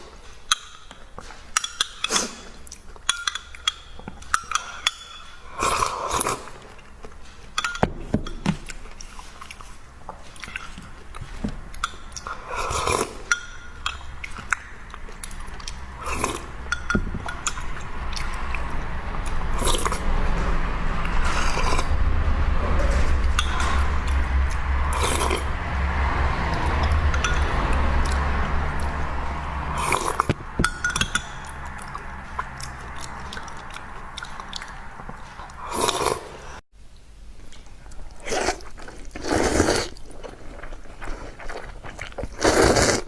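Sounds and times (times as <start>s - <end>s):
chewing and biting: 8.5s - 20.1s, 31.2s - 36.5s, 37.9s - 43.0s
low rumble: 14.8s - 35.7s.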